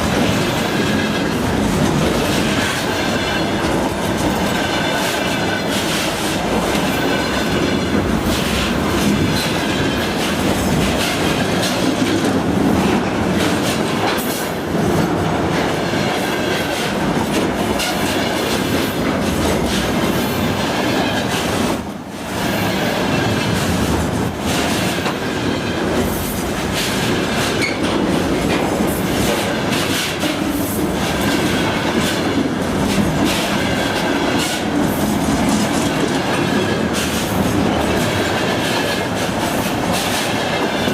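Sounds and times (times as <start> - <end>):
freight train rolling past: 0.0 - 40.9.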